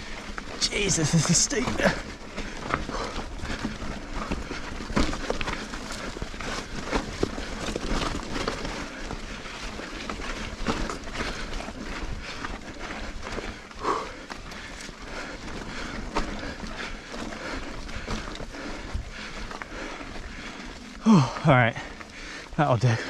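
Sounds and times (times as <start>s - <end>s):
tyres on loose ground: 0.0s - 23.0s
bike knocks and rattles: 2.4s - 13.6s.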